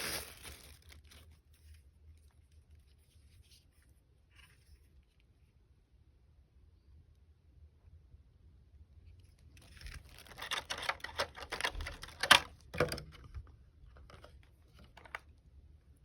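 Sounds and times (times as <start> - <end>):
packaging crackling and rustling: 0.0 - 2.9, 9.5 - 13.0.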